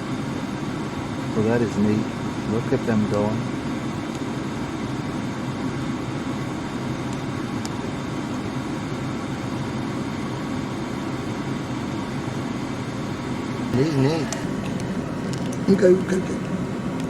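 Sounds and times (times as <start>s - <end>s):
car cabin hum: 13.7s - 17.0s.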